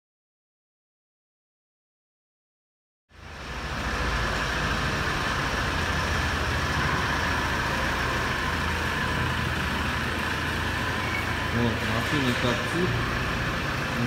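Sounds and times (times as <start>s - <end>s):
diesel engine idling with clatter: 3.1s - 14.0s.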